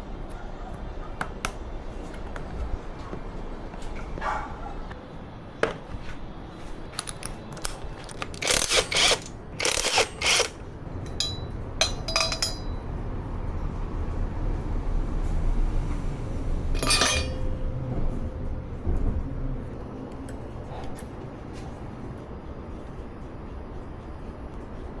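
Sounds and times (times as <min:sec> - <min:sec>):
metal tool click: 0:07.0 - 0:12.7, 0:16.8 - 0:17.4
metallic clinks: 0:08.3 - 0:12.9, 0:16.8 - 0:17.7
metal scraping and rattling: 0:16.7 - 0:18.3.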